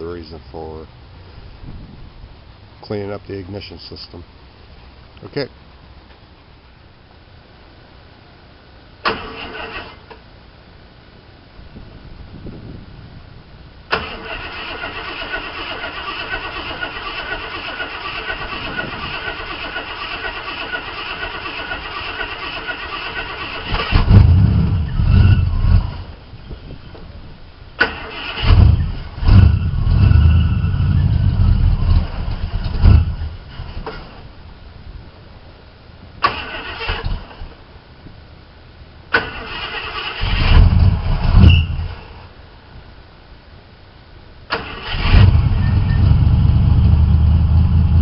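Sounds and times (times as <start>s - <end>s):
car engine starting: 9.0s - 10.3s, 13.9s - 26.2s, 27.7s - 34.4s, 36.2s - 37.7s, 39.1s - 42.4s, 44.5s - 48.0s.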